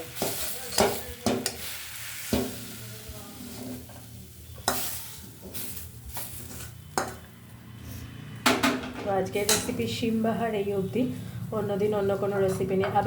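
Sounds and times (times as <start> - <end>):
light sizzle: 0.0 - 7.4
spatula scraping a wok: 0.0 - 8.3.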